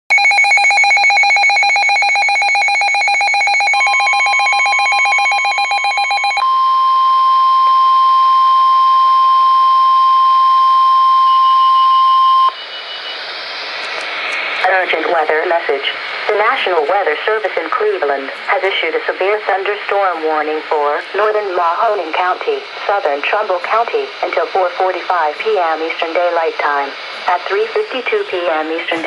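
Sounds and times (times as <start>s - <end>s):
rapidly pulsing alarm beep: 0.1s - 15.0s
steady warning alarm tone: 0.1s - 29.0s
radio hiss: 12.5s - 29.0s.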